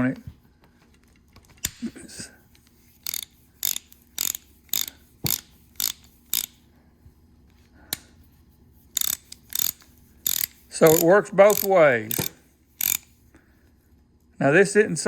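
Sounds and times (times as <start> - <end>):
ratchet pawl clicking: 3.0 - 6.6, 9.0 - 13.2.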